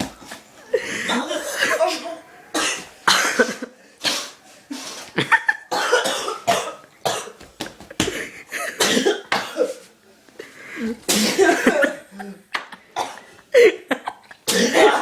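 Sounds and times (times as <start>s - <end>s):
person sneezing: 0.8s - 5.0s, 10.8s - 12.0s, 14.5s - 15.0s.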